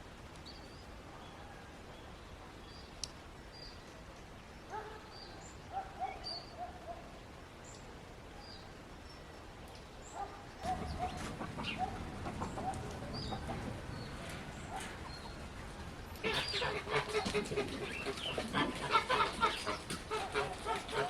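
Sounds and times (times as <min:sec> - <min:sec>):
small birds chirping: 0:00.3 - 0:21.0
chickens clucking: 0:10.6 - 0:21.0.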